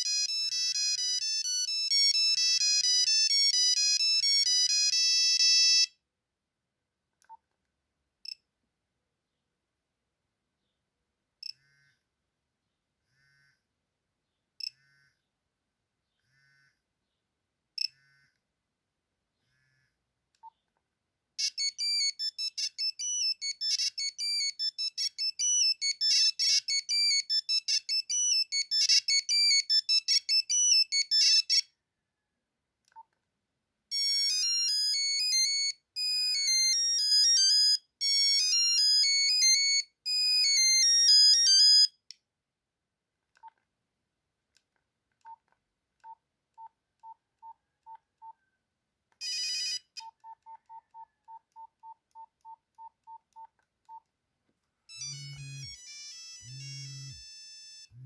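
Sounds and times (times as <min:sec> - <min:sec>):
monophonic ringtone tunes: 0:00.0 - 0:05.9, 0:21.4 - 0:31.6, 0:33.9 - 0:41.9, 0:49.2 - 0:49.9, 0:54.9 - 0:58.0.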